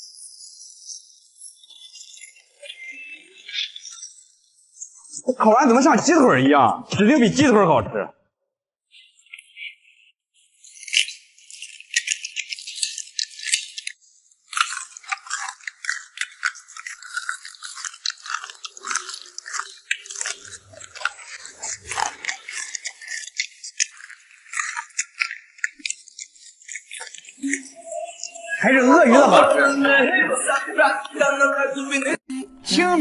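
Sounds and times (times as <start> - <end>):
crunching and chewing meat: 10.6 - 28.4.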